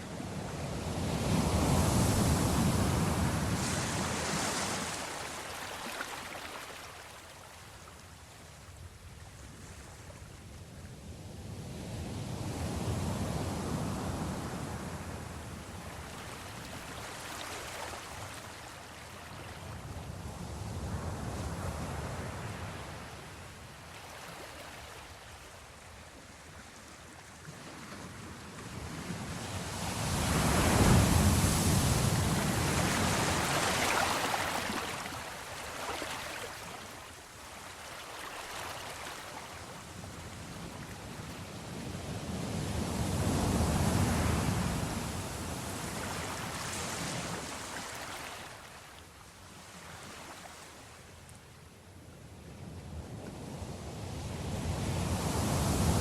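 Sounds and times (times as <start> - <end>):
hiss of surf: 29.2 - 37.1
ocean waves breaking: 29.2 - 41.1.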